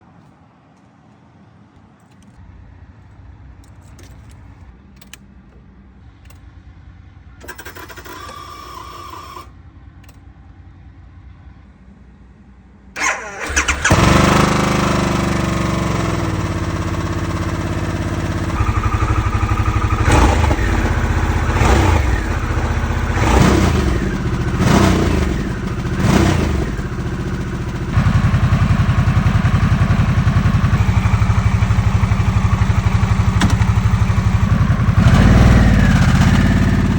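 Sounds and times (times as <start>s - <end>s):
motorcycle engine starting and revving: 7.4s - 9.5s, 13.0s - 36.9s.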